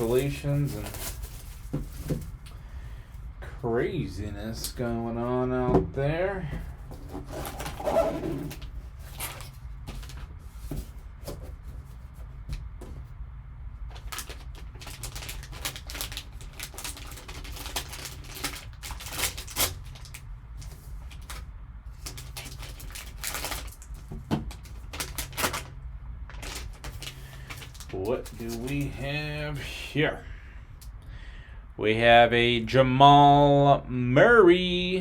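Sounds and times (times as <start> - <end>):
packaging crackling and rustling: 0.0 - 2.6, 6.6 - 12.7, 13.9 - 29.1
steady low hum: 0.0 - 35.0.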